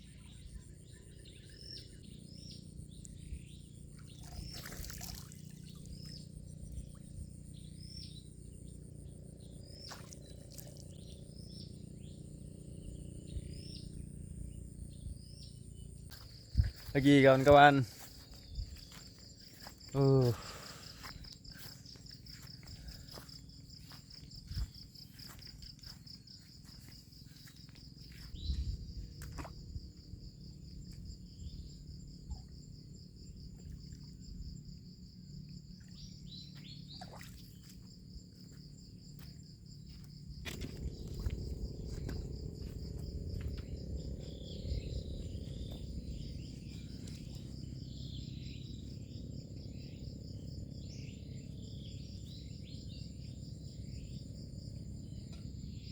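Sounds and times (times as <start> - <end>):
insects chirring: 0.0 - 55.9
low rumbling noise: 40.2 - 55.8.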